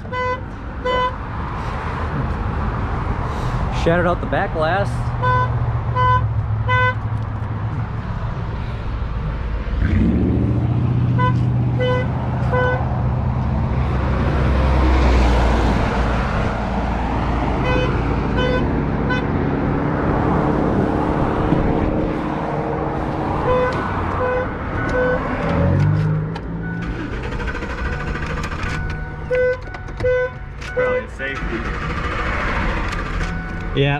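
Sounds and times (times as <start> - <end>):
passing highway traffic: 0.0 - 33.9
vehicle warning chime beeps: 26.6 - 31.4, 33.3 - 33.9.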